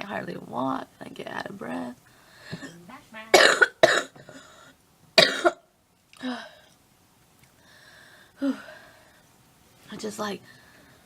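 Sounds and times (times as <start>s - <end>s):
person coughing harshly: 2.6s - 4.4s, 5.2s - 5.6s.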